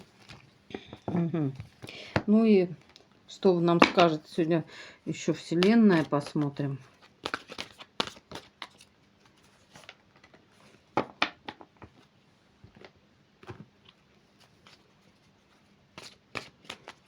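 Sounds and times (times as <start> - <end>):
cards being shuffled: 5.1 - 10.8, 12.8 - 17.0.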